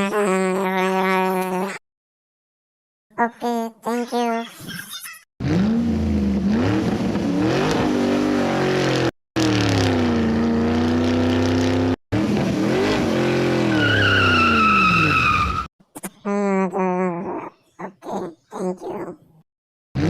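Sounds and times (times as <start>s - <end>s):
car engine revving: 5.4s - 15.4s
high falling squeal: 13.7s - 15.7s.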